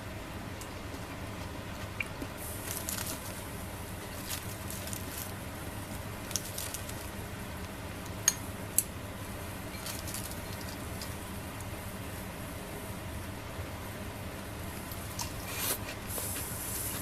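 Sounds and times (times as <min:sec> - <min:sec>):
squid sizzling on a grill: 0:02.4 - 0:13.2, 0:14.7 - 0:17.0.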